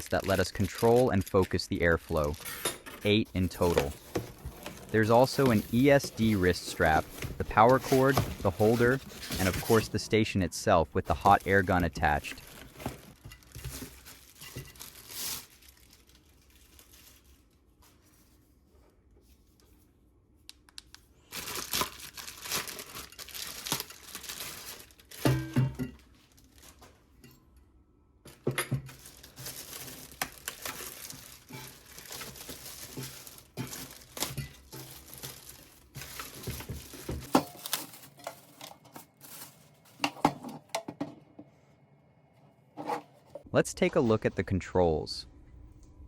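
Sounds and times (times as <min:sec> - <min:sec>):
packaging crinkling and rustling: 0:00.0 - 0:10.1, 0:11.0 - 0:18.4, 0:21.2 - 0:27.1, 0:28.8 - 0:40.2.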